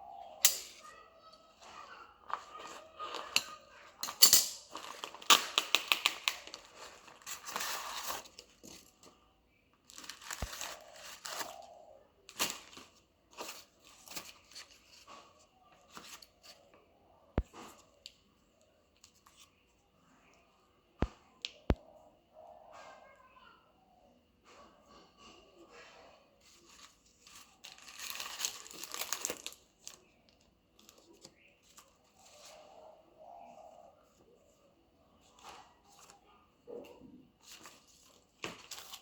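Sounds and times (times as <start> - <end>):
packaging tearing and crinkling: 4.6 - 8.4, 9.9 - 11.6, 27.6 - 30.0.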